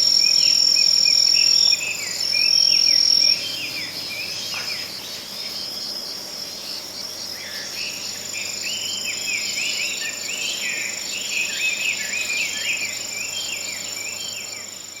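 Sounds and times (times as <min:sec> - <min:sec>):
insects trilling: 0:00.0 - 0:15.0.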